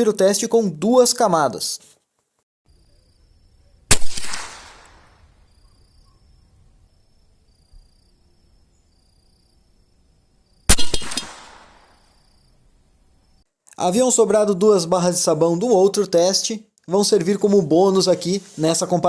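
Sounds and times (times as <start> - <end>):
rifle shots with echo: 3.9 - 5.2, 10.7 - 12.0.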